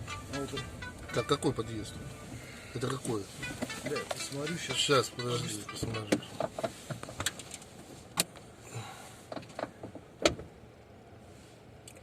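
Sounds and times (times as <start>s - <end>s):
clicks and knocks in car: 5.8s - 8.4s, 9.3s - 10.6s.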